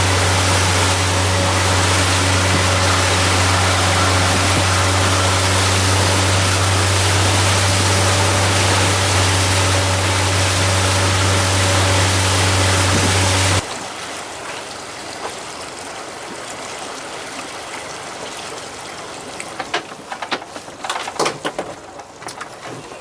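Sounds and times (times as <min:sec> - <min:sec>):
boat engine humming: 0:00.0 - 0:13.6
rush of wind and water: 0:00.0 - 0:19.6.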